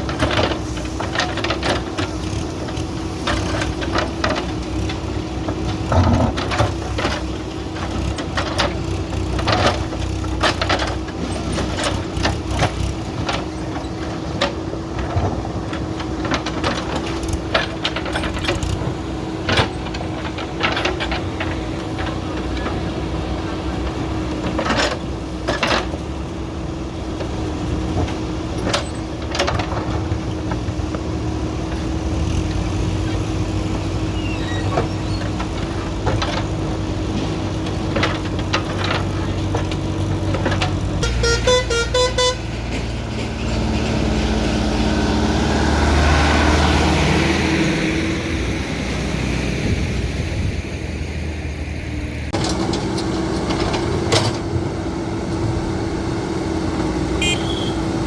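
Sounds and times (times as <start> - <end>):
machine clanks and knocks: 0.0 - 26.3, 27.2 - 31.1, 34.4 - 41.2
diesel engine running: 0.0 - 58.0
passing vehicle: 0.0 - 58.0
vehicle horn beeping: 41.0 - 42.5, 57.1 - 58.0.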